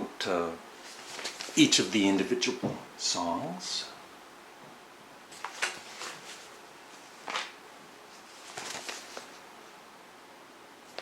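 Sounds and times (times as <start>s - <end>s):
magazine pages rustling: 0.8s - 2.3s, 5.3s - 9.4s.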